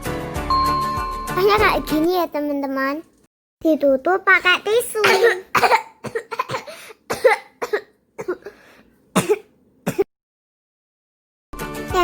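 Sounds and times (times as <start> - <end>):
child coughing: 5.0 - 8.6, 9.2 - 10.1.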